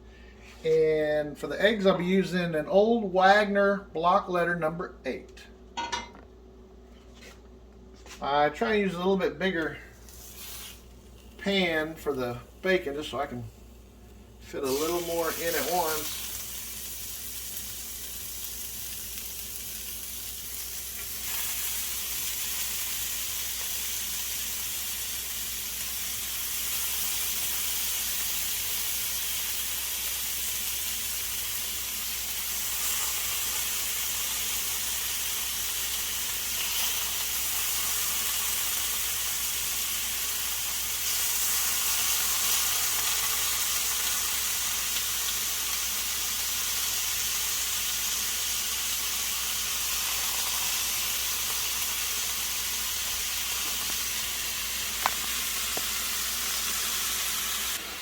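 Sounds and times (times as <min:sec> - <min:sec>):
bacon sizzling in a skillet: 0:09.9 - 0:58.0.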